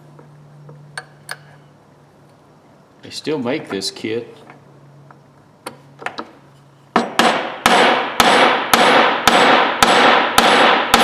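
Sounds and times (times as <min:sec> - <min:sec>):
hammer striking metal punch: 0:07.0 - 0:11.0.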